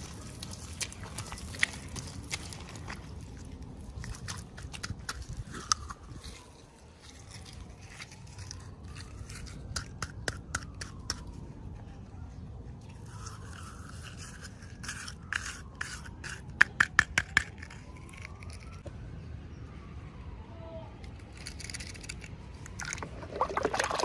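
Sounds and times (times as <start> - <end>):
plastic pieces clicking: 13.5 - 18.8, 21.0 - 22.9.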